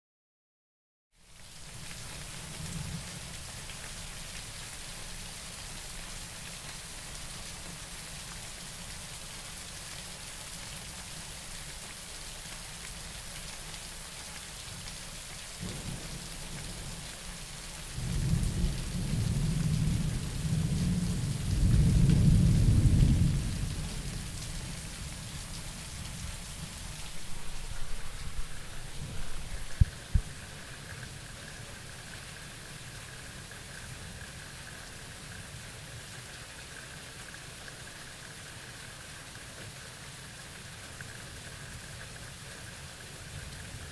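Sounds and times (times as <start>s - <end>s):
rain hissing: 1.2s - 39.3s
thunder rumbling: 18.0s - 30.5s.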